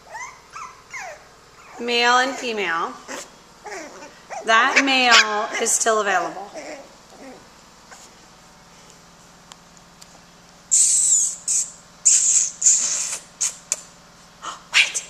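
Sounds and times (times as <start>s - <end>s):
puppies squeaking and squealing: 0.0s - 5.6s, 6.3s - 8.0s, 10.7s - 13.2s.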